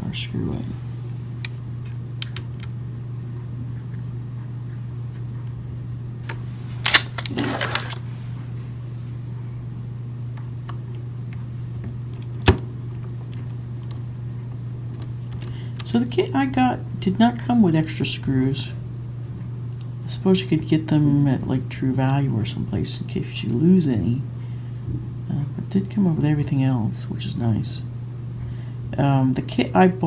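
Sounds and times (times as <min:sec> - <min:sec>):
steady low hum: 0:00.0 - 0:30.0
plastic parts clicking and rustling: 0:06.3 - 0:08.0.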